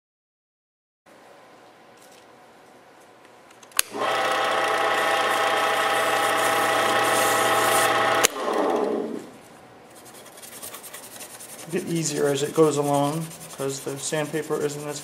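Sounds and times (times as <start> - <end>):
lathe motor humming: 3.9 - 9.3
lathe switch click: 8.2 - 9.0.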